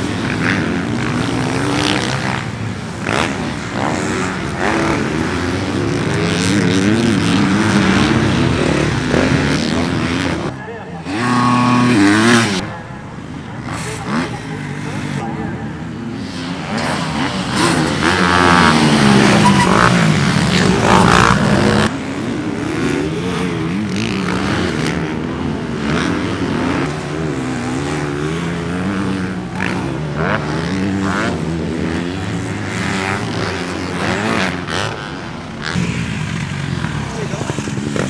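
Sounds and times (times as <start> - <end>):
dirt bike engines revving: 0.0 - 38.0.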